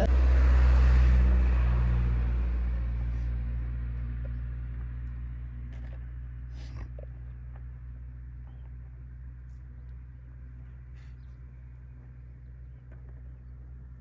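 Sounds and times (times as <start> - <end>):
vehicle passing by: 0.0 - 5.9.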